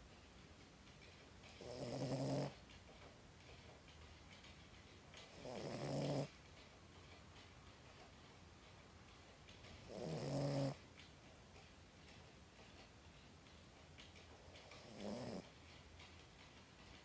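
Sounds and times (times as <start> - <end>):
pet snoring: 1.5 - 2.6, 5.2 - 6.4, 9.7 - 10.8, 14.4 - 15.5.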